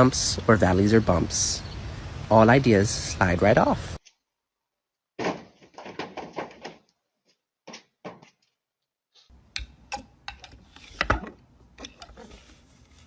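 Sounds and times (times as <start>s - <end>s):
sharp knocks and clicks: 5.2s - 6.9s, 9.4s - 12.1s.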